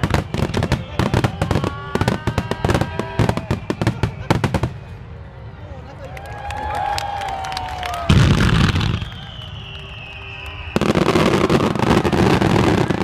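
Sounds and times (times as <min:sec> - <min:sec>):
fireworks crackling: 0:00.0 - 0:05.0, 0:08.0 - 0:13.0
high falling whistle: 0:07.8 - 0:13.0
firework burst: 0:08.1 - 0:13.0.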